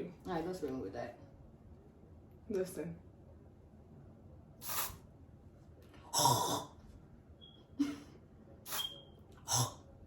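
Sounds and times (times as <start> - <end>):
breathy mouth hiss: 4.6 - 5.0.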